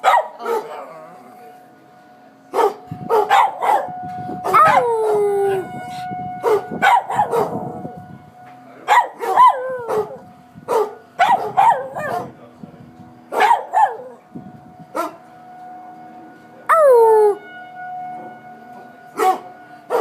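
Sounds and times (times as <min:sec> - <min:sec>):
dog barking: 0:00.0 - 0:00.8, 0:02.6 - 0:03.9, 0:06.4 - 0:07.6, 0:08.9 - 0:12.3, 0:13.3 - 0:14.0, 0:15.0 - 0:15.2, 0:19.2 - 0:20.0
tornado siren: 0:01.1 - 0:20.0
dog howling: 0:02.6 - 0:07.8, 0:08.9 - 0:12.3, 0:13.4 - 0:14.2, 0:16.7 - 0:17.4.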